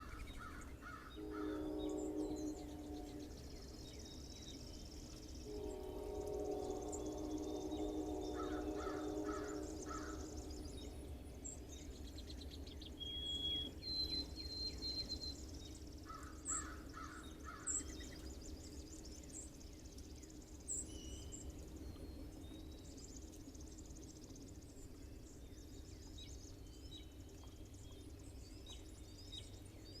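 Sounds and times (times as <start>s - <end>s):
birds calling and whistling: 0.0s - 19.6s
distant train whistle: 1.0s - 11.7s.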